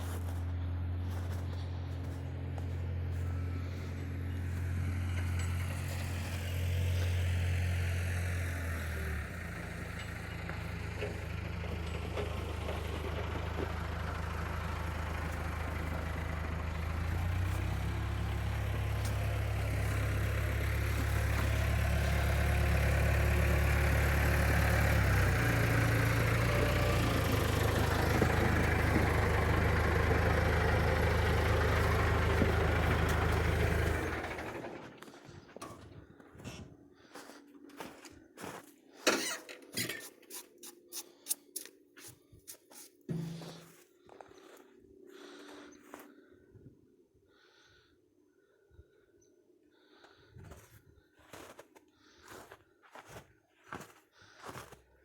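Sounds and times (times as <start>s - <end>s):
tow truck engine running: 0.0s - 38.6s.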